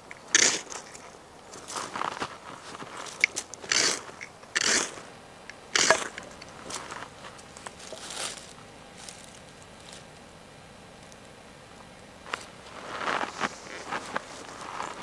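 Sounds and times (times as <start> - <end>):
knife scraping fire steel: 3.6 - 5.0, 5.8 - 7.0.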